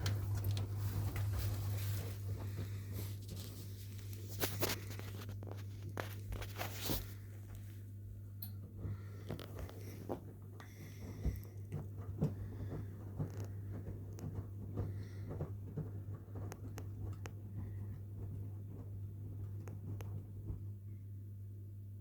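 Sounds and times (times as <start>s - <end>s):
laundry tumbling in drum: 0.0s - 7.4s, 8.0s - 21.0s
washing machine hum: 0.0s - 22.0s.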